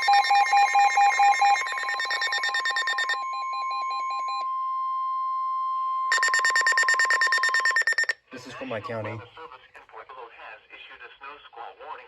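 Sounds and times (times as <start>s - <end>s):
rapid pulsed alert beeps: 0.0s - 4.0s, 6.1s - 8.2s.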